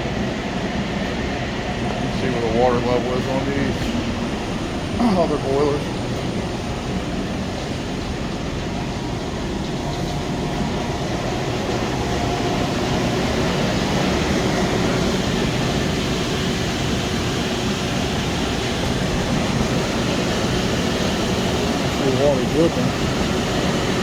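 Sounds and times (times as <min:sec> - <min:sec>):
boiler room machinery rumble: 0:00.0 - 0:24.0.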